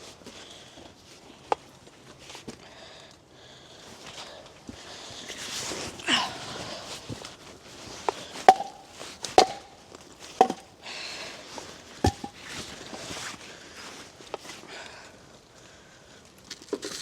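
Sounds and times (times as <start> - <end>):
rustling: 3.9 - 14.7
hatchet chopping wood: 8.5 - 9.7, 10.4 - 10.6, 12.1 - 12.4.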